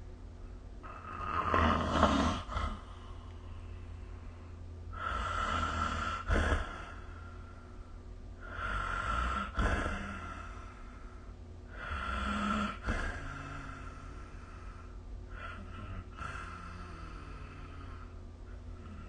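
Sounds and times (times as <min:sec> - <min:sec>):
person snoring with snorts: 0:00.8 - 0:03.0, 0:04.9 - 0:07.3, 0:08.4 - 0:10.7, 0:11.7 - 0:19.0.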